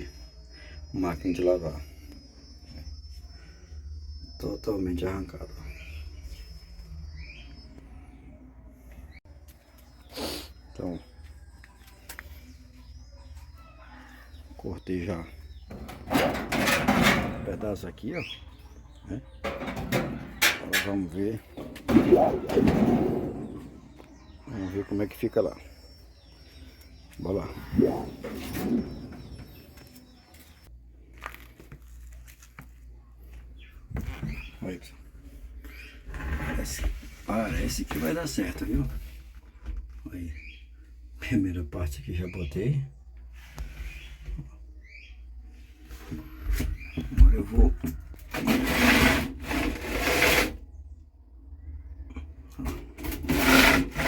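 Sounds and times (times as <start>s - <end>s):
rustling and scraping: 15.4s - 17.9s, 19.4s - 24.3s, 27.8s - 34.6s, 35.2s - 40.0s, 48.0s - 50.7s, 52.6s - 54.0s.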